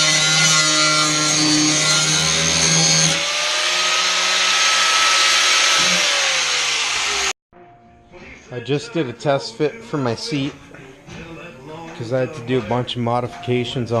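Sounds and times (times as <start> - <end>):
power tool whine on sheet steel: 0.0 - 7.3.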